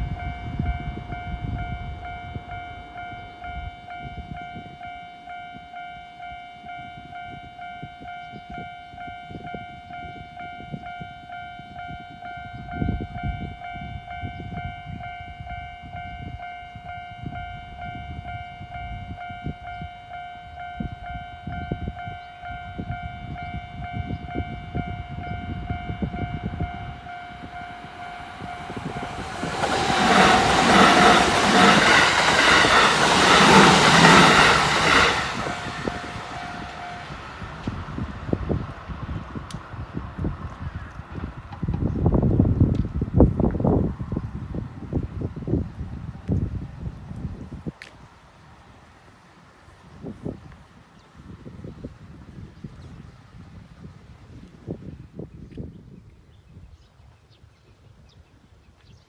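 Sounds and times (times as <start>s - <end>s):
level crossing warning bell: 0.0s - 39.3s
train passing with wheel noise: 0.0s - 55.1s.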